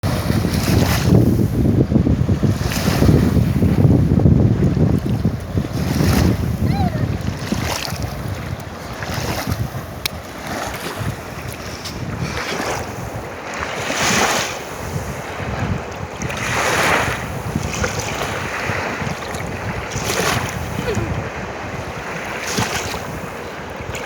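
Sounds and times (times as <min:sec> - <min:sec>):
wind buffeting microphone: 0:00.0 - 0:24.0
river water rushing: 0:18.0 - 0:24.0.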